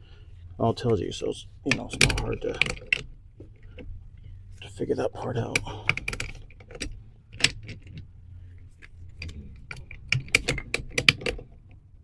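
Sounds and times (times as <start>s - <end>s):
plastic fittings clicking: 5.4s - 8.1s, 8.8s - 11.8s.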